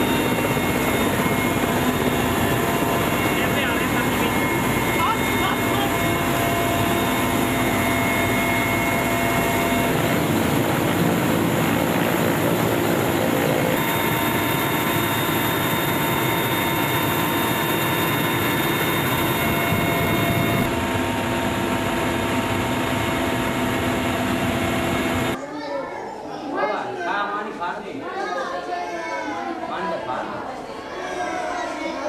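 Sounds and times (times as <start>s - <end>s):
aircraft engine droning: 0.0s - 25.4s.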